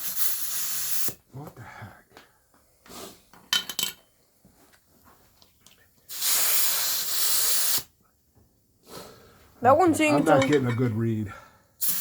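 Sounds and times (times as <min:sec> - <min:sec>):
air hissing from tire valve: 0:00.0 - 0:01.2, 0:06.1 - 0:07.9, 0:11.8 - 0:12.0
air puffs from tire valve: 0:00.0 - 0:01.2, 0:06.1 - 0:07.9, 0:11.8 - 0:12.0.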